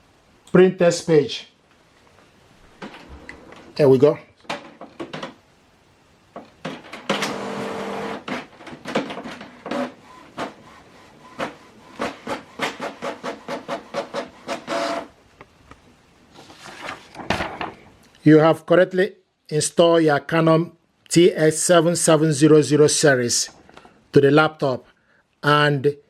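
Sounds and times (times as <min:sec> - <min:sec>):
printer clicking: 0:06.4 - 0:15.1
printer motor whir: 0:06.9 - 0:15.1.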